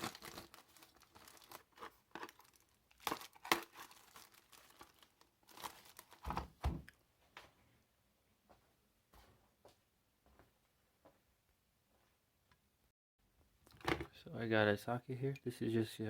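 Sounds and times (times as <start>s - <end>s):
packaging crinkling and tearing: 0.0s - 6.4s.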